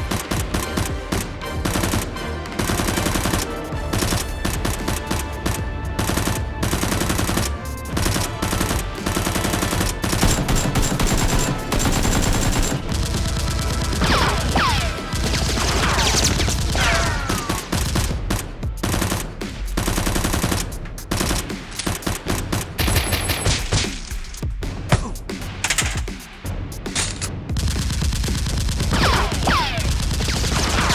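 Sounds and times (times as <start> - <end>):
automatic gunfire: 0.0 - 18.1, 27.0 - 30.9.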